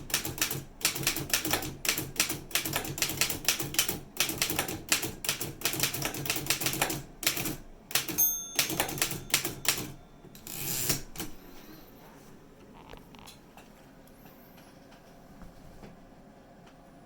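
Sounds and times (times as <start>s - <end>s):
typewriter keystrokes: 0.0s - 11.4s
typewriter margin bell ring: 8.0s - 11.4s
typewriter carriage sliding: 10.4s - 11.4s.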